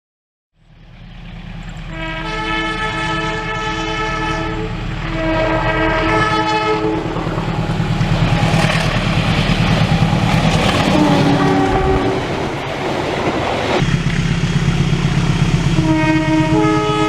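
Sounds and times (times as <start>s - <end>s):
train rumble: 0.6s - 17.0s
wheels clattering on rails: 0.7s - 2.1s, 4.7s - 17.0s
locomotive two-tone horn: 1.8s - 7.8s, 10.7s - 12.6s, 15.7s - 17.0s.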